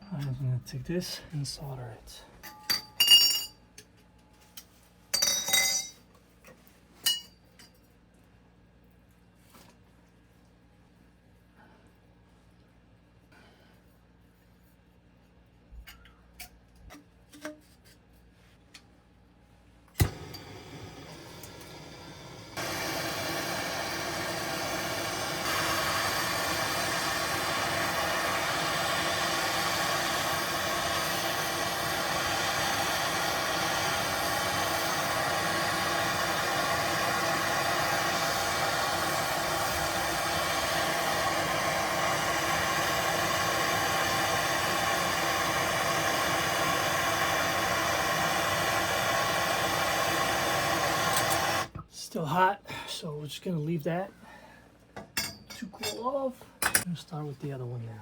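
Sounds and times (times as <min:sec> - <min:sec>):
torch lighting click: 0:19.9 - 0:51.7
torch flame hissing: 0:20.0 - 0:51.8.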